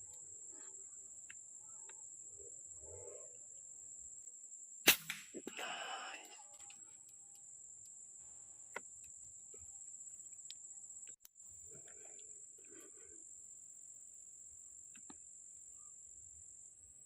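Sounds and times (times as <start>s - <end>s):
high-pitched insect drone: 5.5s - 7.7s.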